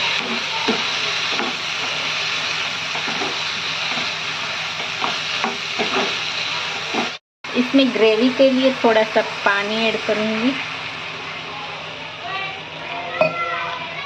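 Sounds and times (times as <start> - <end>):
spoon scraping a pan: 0.0 - 2.0, 3.0 - 4.2, 4.8 - 7.2
frying hiss in a pan: 0.0 - 14.0.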